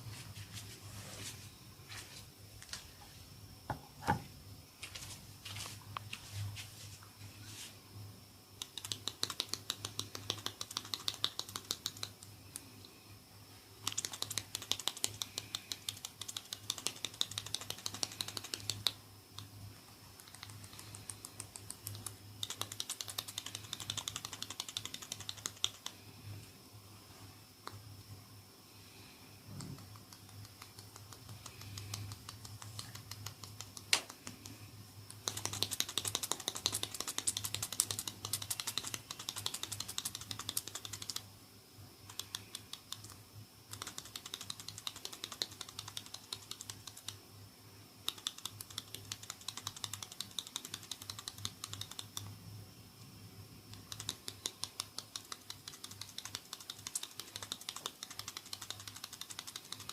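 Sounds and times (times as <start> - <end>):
crackling clicks of hair massage: 8.6 - 12.8, 13.8 - 26.1, 29.6 - 41.3, 42.0 - 47.2, 48.0 - 52.4, 53.6 - 59.9.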